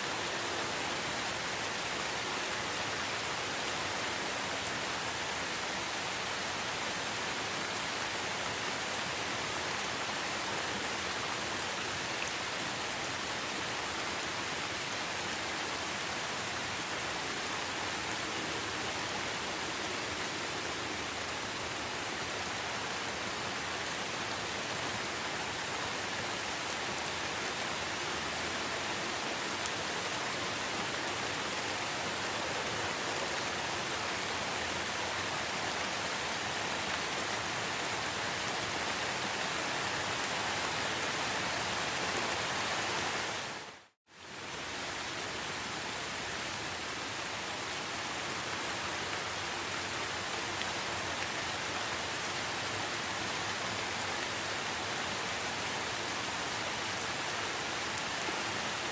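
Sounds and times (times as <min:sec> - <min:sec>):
steady rain hiss: 0:00.0 - 0:58.9.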